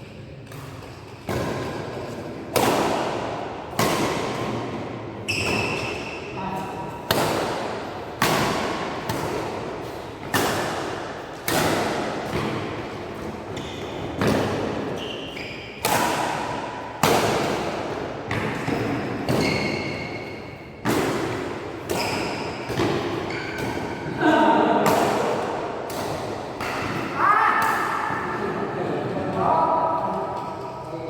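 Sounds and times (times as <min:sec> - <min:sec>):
badminton racket hitting shuttlecock: 0:00.5 - 0:28.4
shoe squeaks: 0:05.3 - 0:06.0, 0:15.0 - 0:15.8, 0:19.4 - 0:20.0, 0:22.0 - 0:22.6, 0:23.3 - 0:23.6.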